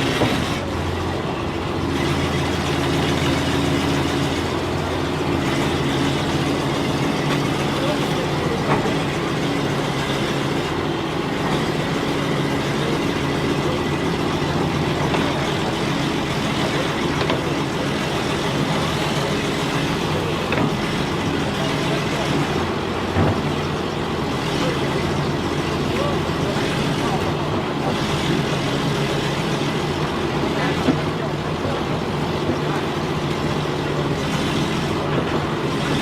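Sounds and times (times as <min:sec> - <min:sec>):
backhoe engine running: 0:00.0 - 0:36.0
machine knocks and clunks: 0:20.4 - 0:21.0, 0:23.1 - 0:23.6.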